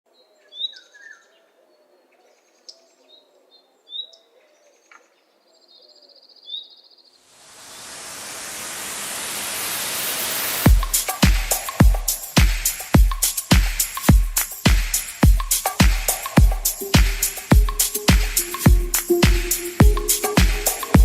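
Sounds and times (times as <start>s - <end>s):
rush of noise: 7.3s - 12.2s
bass-heavy music beat: 10.6s - 21.0s.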